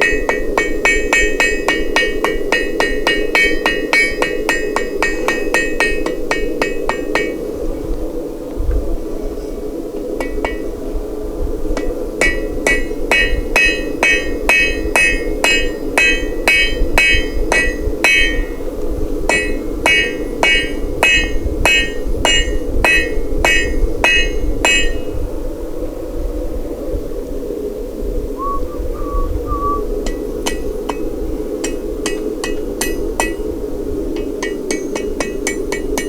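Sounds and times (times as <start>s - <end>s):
hammer ringing on anvil: 0.0s - 7.4s, 12.2s - 18.6s, 19.3s - 25.0s
steady low drone: 28.3s - 30.9s.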